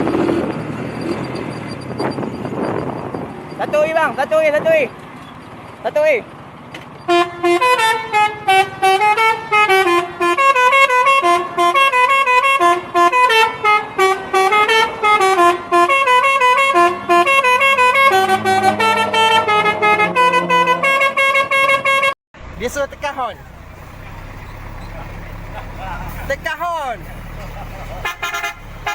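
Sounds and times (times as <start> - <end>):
musical air horn playing a tune: 7.1 - 22.8, 28.0 - 28.9.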